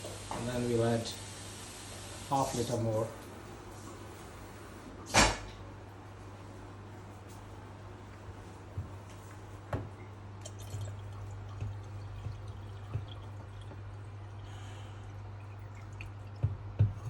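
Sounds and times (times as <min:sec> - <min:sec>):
steady low hum: 0:03.0 - 0:17.0
water trickling and dripping: 0:10.4 - 0:17.0.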